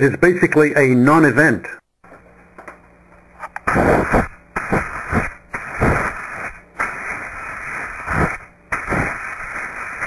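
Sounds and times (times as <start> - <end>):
compressed air hissing blasts: 3.6 - 10.0.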